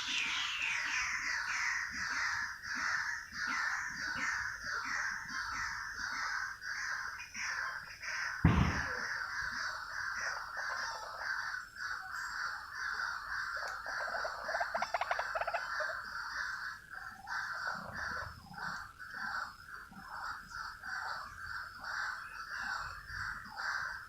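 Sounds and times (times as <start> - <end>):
waterhen calling: 0.0 - 7.6, 8.6 - 24.0
sharp thump: 8.5 - 9.0.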